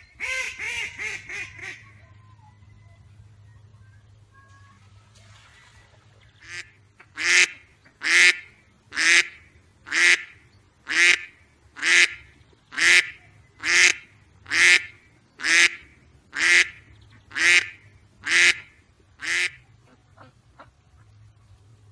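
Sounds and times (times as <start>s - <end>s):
duck quacking: 0.0s - 2.0s, 6.4s - 21.2s.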